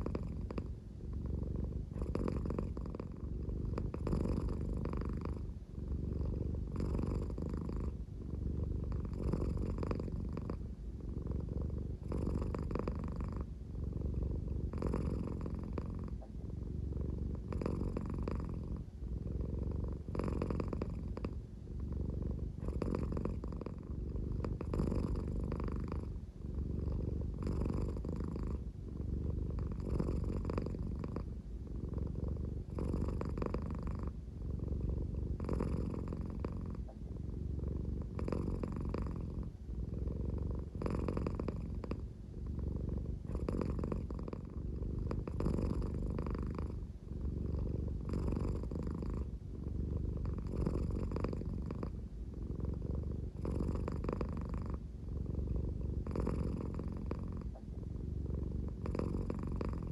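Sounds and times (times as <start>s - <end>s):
cat purring: 0.0s - 59.9s.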